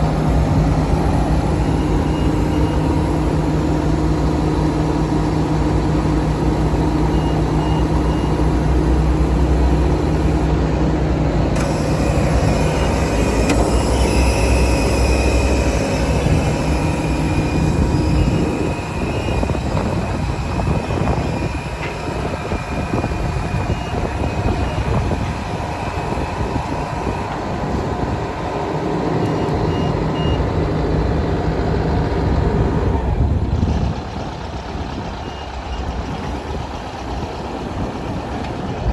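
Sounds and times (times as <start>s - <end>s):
diesel engine running: 0.0s - 38.9s
high warning beeps: 0.1s - 10.5s, 11.6s - 27.4s.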